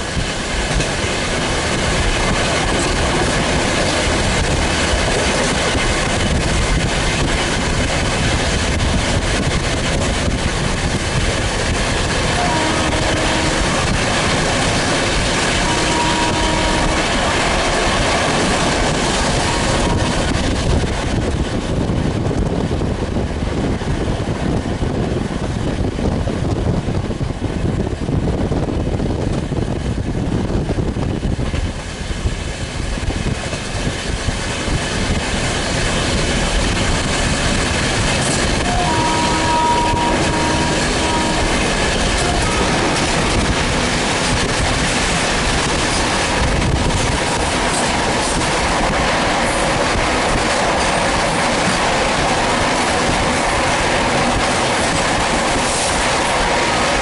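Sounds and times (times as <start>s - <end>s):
train rumbling on rails: 0.0s - 57.0s
train horn: 12.2s - 14.1s, 15.4s - 17.4s, 19.3s - 20.4s, 38.6s - 43.1s.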